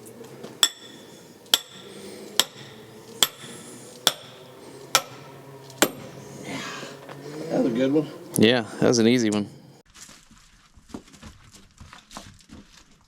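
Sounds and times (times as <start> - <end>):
hammer clanging on pipe: 0.6 - 6.2.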